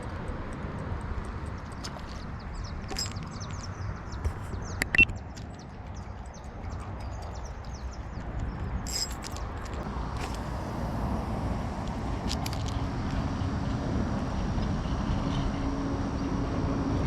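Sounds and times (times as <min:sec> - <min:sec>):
sharp clicks: 0:00.0 - 0:10.5
steady low rumble: 0:00.0 - 0:17.0
small birds chirping: 0:01.3 - 0:10.4.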